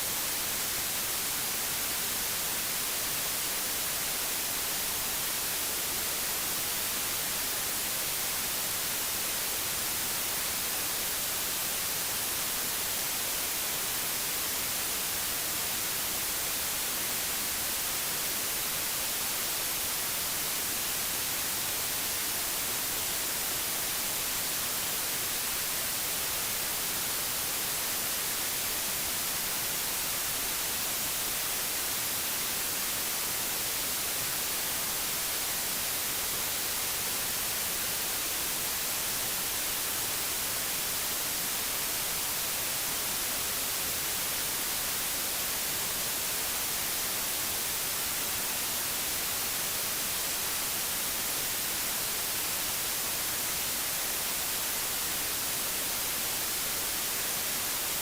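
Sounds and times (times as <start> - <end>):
digital white noise hiss: 0.0 - 58.0.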